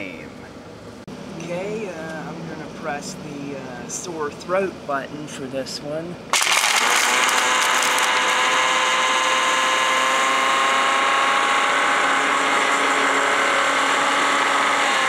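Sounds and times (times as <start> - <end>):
blender motor grinding hard candy: 6.3 - 15.0.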